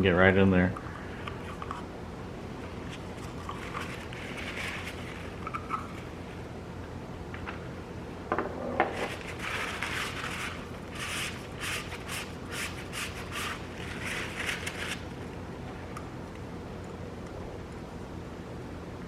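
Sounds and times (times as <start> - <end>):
rubbing and scraping strokes: 2.7 - 6.0, 9.0 - 15.0.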